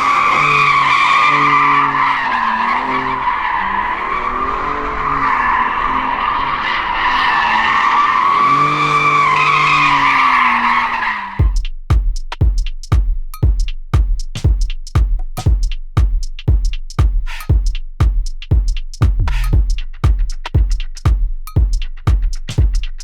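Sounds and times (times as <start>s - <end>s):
car engine revving: 0.0s - 11.2s
car tyres squealing: 0.0s - 11.5s.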